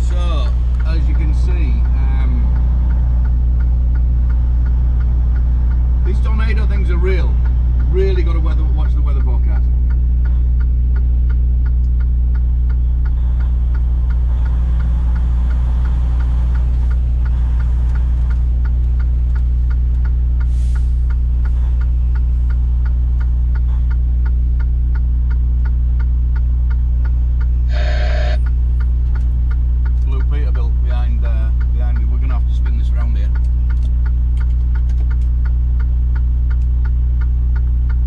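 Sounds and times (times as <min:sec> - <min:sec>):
truck engine idling: 0:00.0 - 0:38.0
turn signal clicking: 0:00.0 - 0:38.0
short tone: 0:27.7 - 0:28.4.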